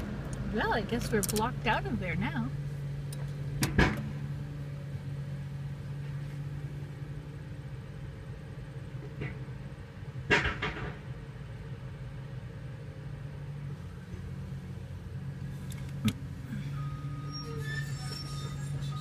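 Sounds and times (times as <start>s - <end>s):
engine running: 0.0s - 19.0s.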